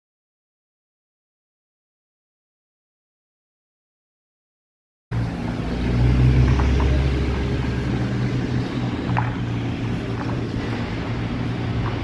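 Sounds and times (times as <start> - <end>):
steady low rumble: 5.1 - 12.0.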